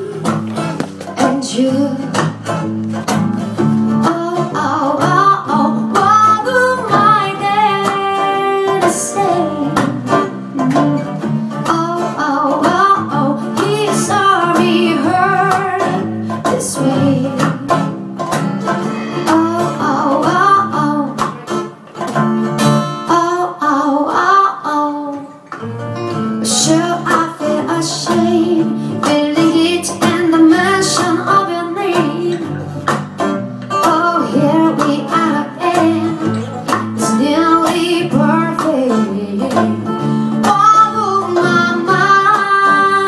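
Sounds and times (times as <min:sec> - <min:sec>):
strummed acoustic guitar: 0:00.0 - 0:43.0
wavering melody line: 0:18.8 - 0:20.7.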